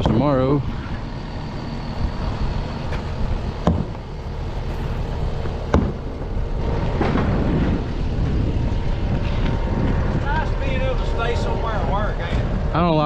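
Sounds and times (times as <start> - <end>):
low engine rumble: 0.0 - 13.0
sharp knocks: 4.6 - 7.8.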